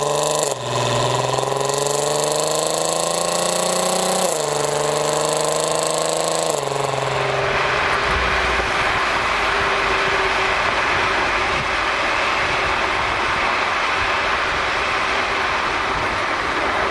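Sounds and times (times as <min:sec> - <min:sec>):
car exhaust accelerating: 0:00.0 - 0:16.9
road and wind noise: 0:00.0 - 0:16.9.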